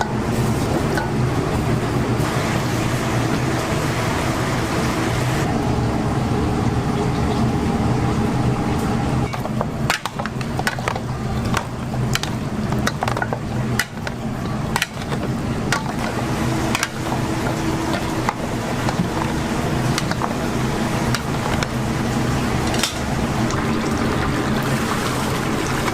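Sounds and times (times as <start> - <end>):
machine hum: 0.0 - 25.9
sharp knocks and clacks: 9.3 - 20.5.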